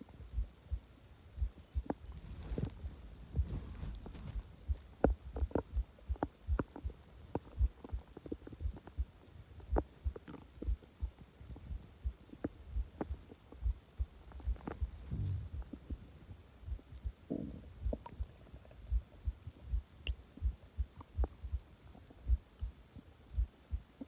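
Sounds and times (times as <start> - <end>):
stomach gurgling: 1.8 - 19.3.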